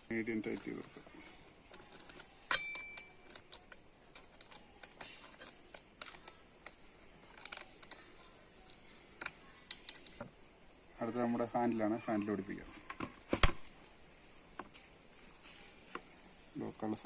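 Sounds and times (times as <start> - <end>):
sharp metallic click with ping: 2.5 - 3.1.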